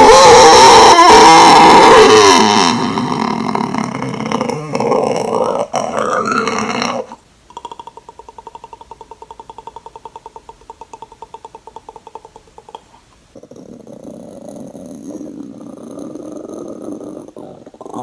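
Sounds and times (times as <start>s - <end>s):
person growling: 0.0s - 12.8s
rapid pitched mouth clicks: 3.1s - 13.3s.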